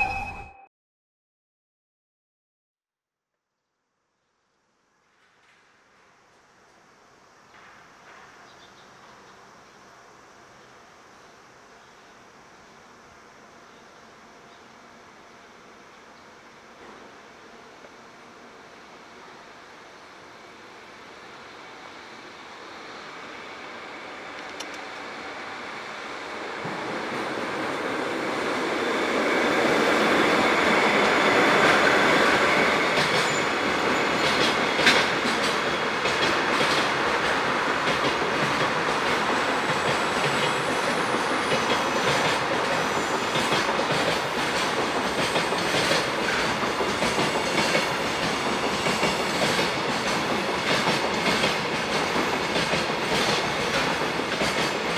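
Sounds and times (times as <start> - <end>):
freight train passing: 5.0 - 54.9
wheels clacking over rail joints: 29.6 - 54.9.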